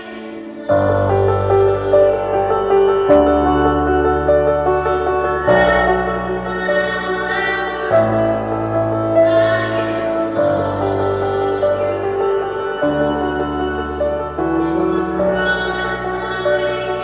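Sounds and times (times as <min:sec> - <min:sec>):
slow tender music with sustained chords: 0:00.0 - 0:17.0.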